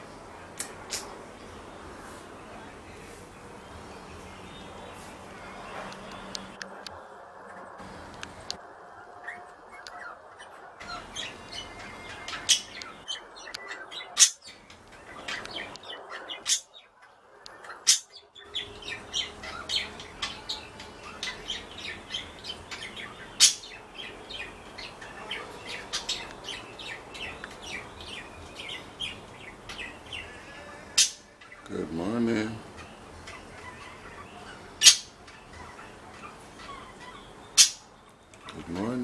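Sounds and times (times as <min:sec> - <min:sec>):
budgies chirping: 0:00.0 - 0:06.6, 0:07.8 - 0:08.6, 0:10.8 - 0:39.0.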